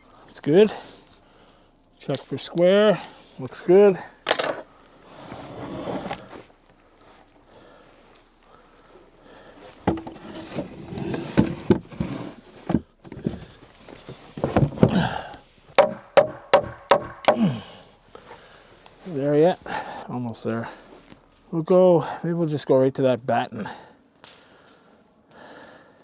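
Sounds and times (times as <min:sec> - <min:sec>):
lumber knocking and bumping: 0:09.8 - 0:17.8
sharp knocks: 0:15.8 - 0:17.7.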